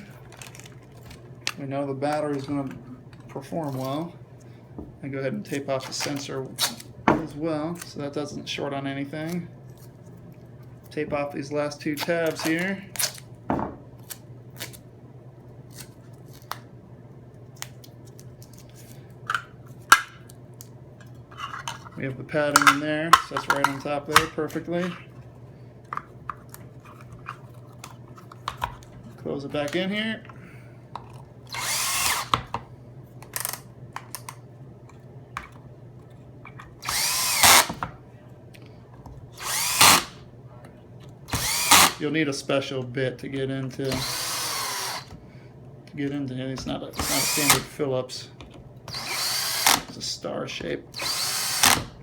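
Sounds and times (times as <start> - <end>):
tape clicking and crinkling: 0.0 - 4.0, 17.5 - 19.1
steady low hum: 0.0 - 52.0
power drill whine: 31.5 - 32.3, 36.8 - 37.8, 39.4 - 40.2, 41.3 - 42.0, 43.9 - 45.2, 47.0 - 47.7, 48.9 - 49.9, 51.0 - 51.9.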